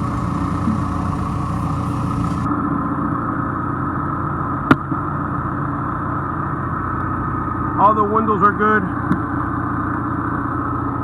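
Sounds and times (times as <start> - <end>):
diesel engine idling: 0.0 - 2.5
hiss: 0.0 - 2.5.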